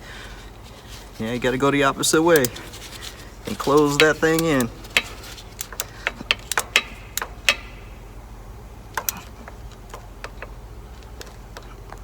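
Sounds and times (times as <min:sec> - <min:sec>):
sharp metallic clicks: 0:02.0 - 0:08.1.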